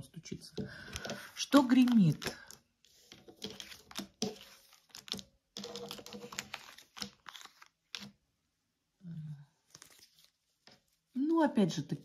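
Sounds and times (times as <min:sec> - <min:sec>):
cards rustling: 0:00.8 - 0:08.2, 0:09.6 - 0:11.0.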